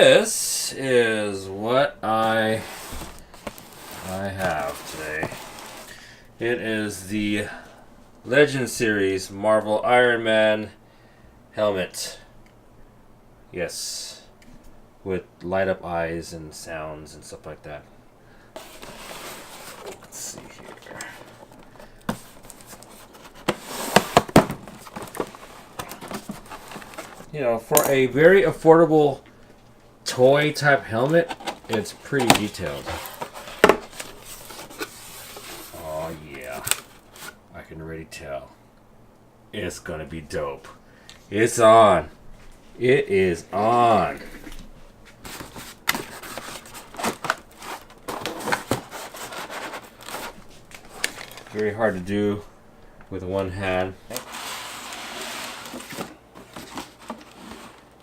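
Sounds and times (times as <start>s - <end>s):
packaging rustling: 2.6s - 6.0s, 18.6s - 27.3s, 30.9s - 37.4s, 45.2s - 51.9s, 54.1s - 58.0s.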